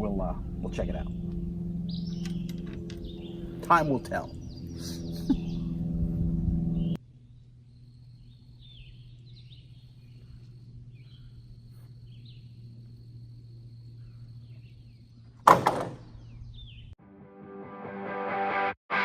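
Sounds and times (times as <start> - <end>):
steady low hum: 0.0 - 15.5
faint bird chirps: 6.8 - 15.3
loud knock: 15.5 - 16.1.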